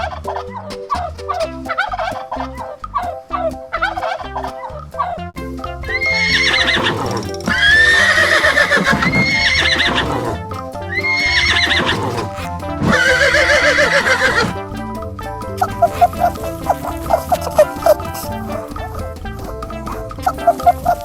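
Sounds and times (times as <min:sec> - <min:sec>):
background music with steady beat: 0:00.0 - 0:21.0
horse whinnying: 0:05.9 - 0:14.8.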